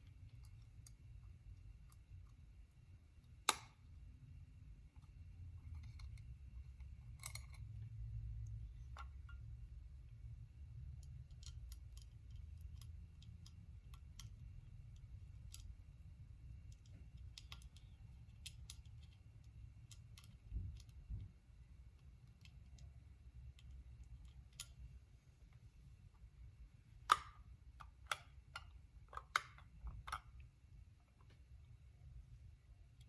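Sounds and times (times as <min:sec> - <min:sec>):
metal parts clicking: 0:06.9 - 0:07.8.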